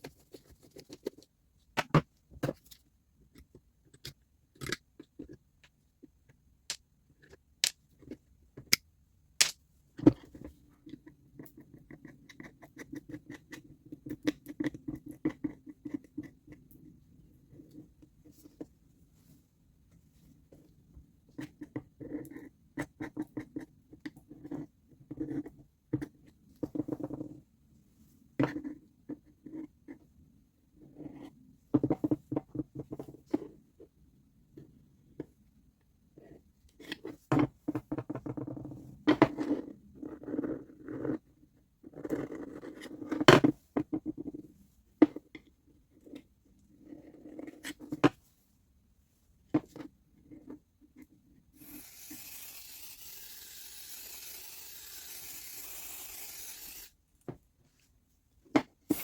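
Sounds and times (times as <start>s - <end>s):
scratching and scraping strokes: 51.6s - 56.9s.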